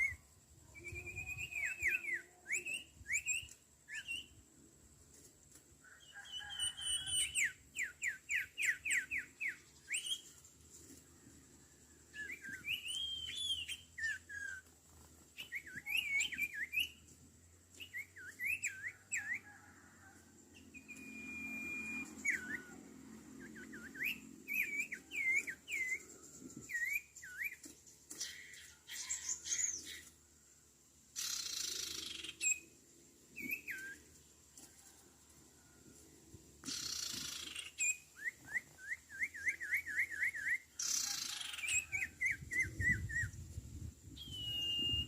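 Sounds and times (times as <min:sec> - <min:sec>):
bird whistled calls: 0:00.0 - 0:04.4, 0:06.1 - 0:10.2, 0:12.1 - 0:14.7, 0:15.4 - 0:17.0, 0:17.8 - 0:19.7, 0:20.7 - 0:22.8, 0:23.4 - 0:27.6, 0:31.2 - 0:32.7, 0:33.4 - 0:34.0, 0:36.7 - 0:43.4, 0:44.1 - 0:45.0
steady held whistle: 0:00.0 - 0:04.4, 0:12.1 - 0:14.6, 0:15.4 - 0:17.0, 0:20.7 - 0:22.8, 0:23.4 - 0:26.1, 0:44.1 - 0:45.0.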